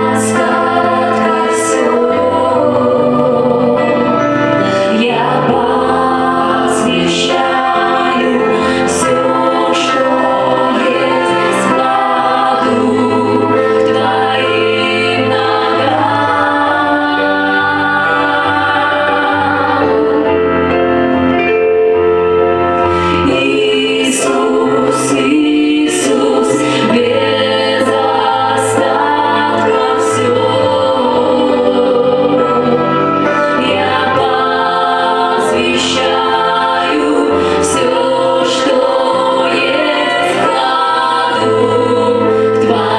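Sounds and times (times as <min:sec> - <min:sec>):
choir singing: 0:00.0 - 0:42.9
woman singing: 0:04.8 - 0:20.2.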